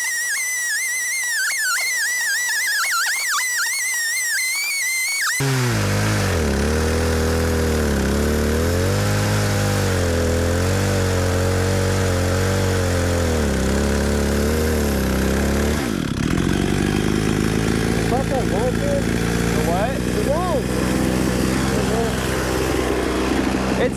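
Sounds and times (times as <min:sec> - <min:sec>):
chainsaw cutting log: 0:05.4 - 0:23.9.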